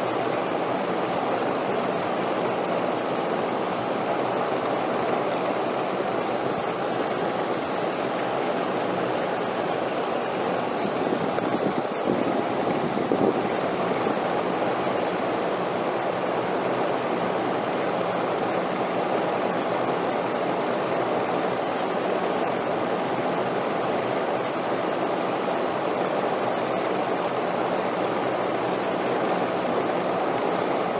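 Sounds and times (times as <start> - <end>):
rushing wind: 6.5 - 15.4.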